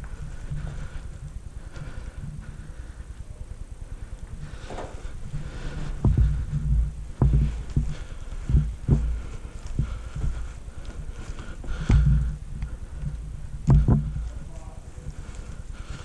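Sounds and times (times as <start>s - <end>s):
low rustle of movement: 0.0s - 16.0s
heavy footsteps thumping: 4.3s - 16.0s.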